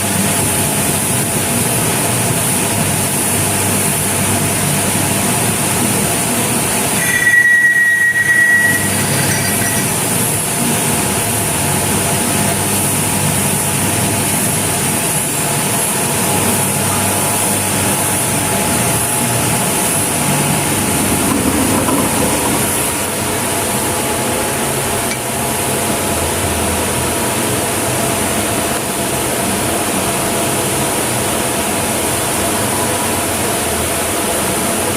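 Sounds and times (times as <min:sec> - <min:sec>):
lathe cutting with high whine: 0:06.8 - 0:10.5
short high-pitched squeal: 0:07.0 - 0:10.0.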